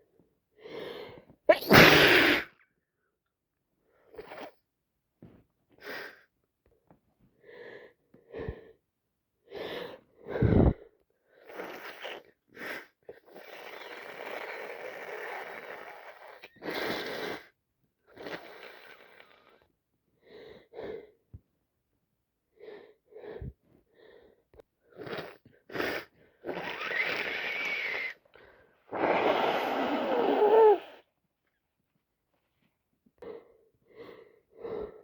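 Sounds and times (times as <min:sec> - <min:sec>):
person sniffling: 0:01.5 - 0:02.5, 0:29.0 - 0:31.0
loud nose blowing: 0:01.5 - 0:02.6, 0:11.4 - 0:17.5, 0:18.1 - 0:19.2, 0:24.9 - 0:31.1.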